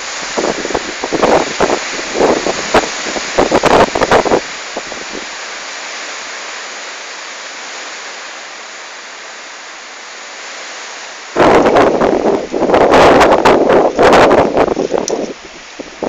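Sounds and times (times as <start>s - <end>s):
strong wind rushing: 0.0s - 5.4s, 11.3s - 16.0s
wind buffeting microphone: 0.0s - 5.4s, 11.3s - 16.0s.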